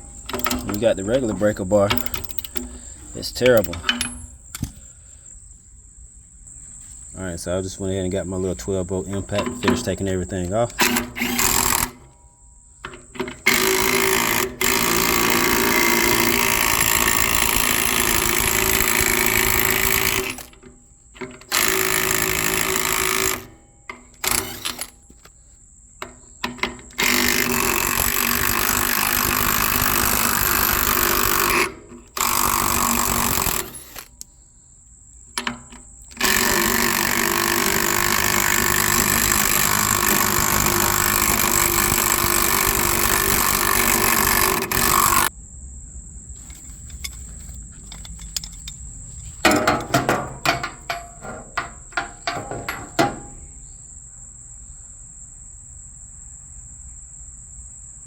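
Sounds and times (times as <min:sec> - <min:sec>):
impact wrench hammering: 0:00.0 - 0:04.8, 0:10.7 - 0:12.0, 0:12.8 - 0:25.0, 0:26.0 - 0:34.2, 0:35.4 - 0:45.3, 0:49.4 - 0:53.5.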